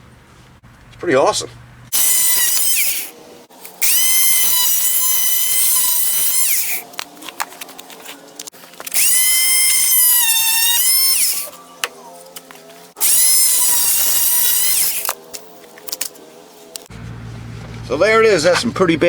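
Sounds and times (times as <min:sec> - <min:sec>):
multi-tool high-pitched whine: 0:01.9 - 0:06.9, 0:08.9 - 0:11.6, 0:13.0 - 0:15.4.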